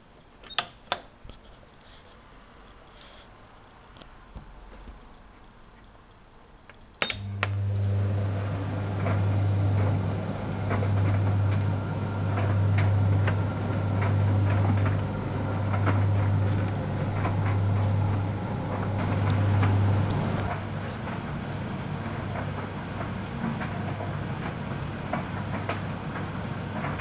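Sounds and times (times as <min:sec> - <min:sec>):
washing machine humming: 0:07.0 - 0:27.0.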